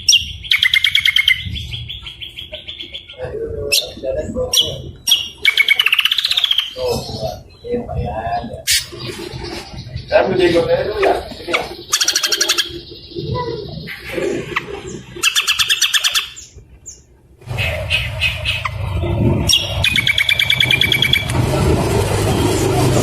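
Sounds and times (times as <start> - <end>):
songbird chattering: 0.0 - 21.3
low background rumble: 16.3 - 23.0.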